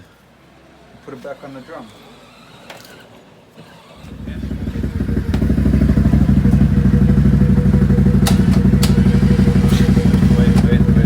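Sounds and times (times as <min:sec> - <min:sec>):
motor starting and running: 0:01.2 - 0:11.0.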